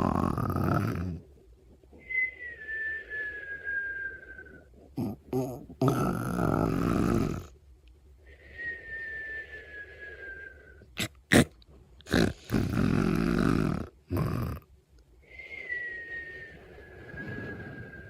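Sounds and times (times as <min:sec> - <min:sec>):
rumbling snore: 0:00.0 - 0:01.2, 0:05.0 - 0:07.6, 0:12.1 - 0:14.7
whistling snoring breath: 0:02.0 - 0:05.1, 0:08.3 - 0:11.0, 0:15.2 - 0:18.0
sharp snorts: 0:11.0 - 0:14.6.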